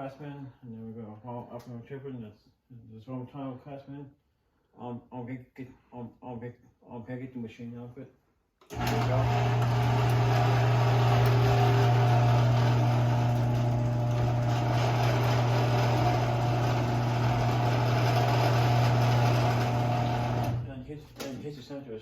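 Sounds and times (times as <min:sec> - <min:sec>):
garage door motor humming: 0:08.7 - 0:21.3.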